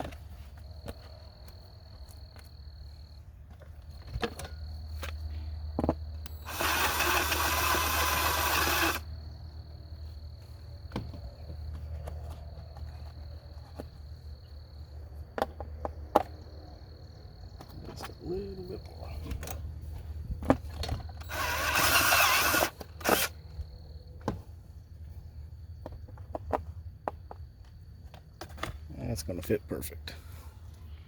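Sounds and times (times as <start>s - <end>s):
power drill boring: 6.2s - 9.1s, 21.2s - 23.4s.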